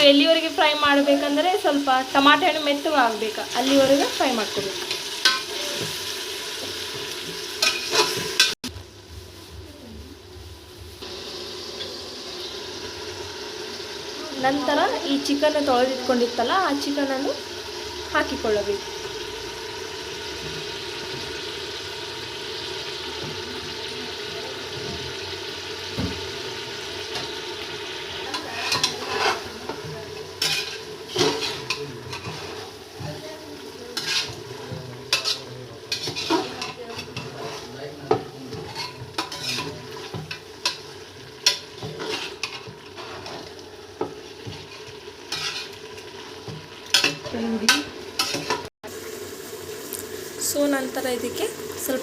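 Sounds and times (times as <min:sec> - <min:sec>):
chicken sizzling in oil: 0:00.0 - 0:52.0
spoon scraping and knocking pot: 0:28.3 - 0:29.5, 0:41.4 - 0:45.8.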